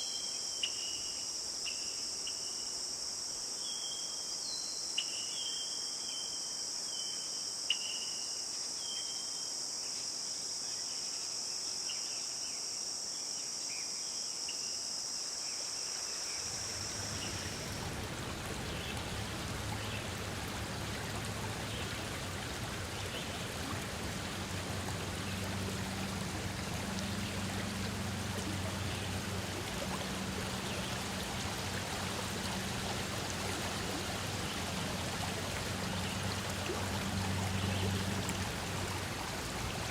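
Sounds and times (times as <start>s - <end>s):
high-pitched insect chorus: 0.0s - 39.9s
stream water running: 14.7s - 39.9s.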